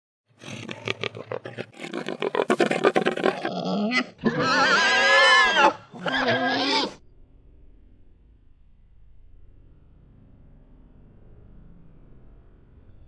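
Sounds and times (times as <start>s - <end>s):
hogs grunting: 0.3s - 7.0s
hog squealing: 0.4s - 7.0s.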